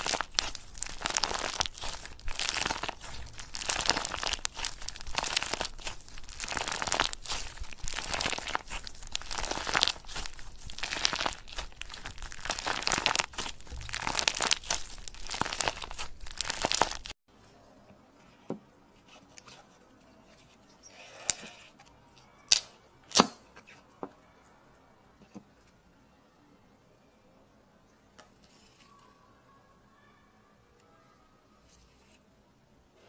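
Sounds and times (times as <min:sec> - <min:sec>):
slime squeezed crackling: 0:00.0 - 0:17.2.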